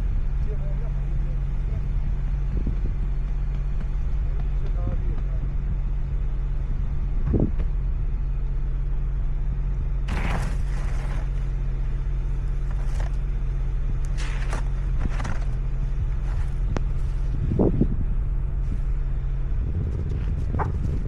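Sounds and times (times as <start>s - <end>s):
car engine idling: 0.0s - 21.0s
short rushing noises: 10.1s - 11.5s.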